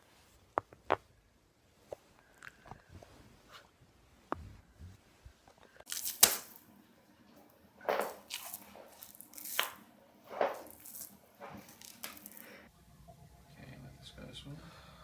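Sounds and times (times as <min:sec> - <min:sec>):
rustling breathy noises: 0:11.4 - 0:12.7.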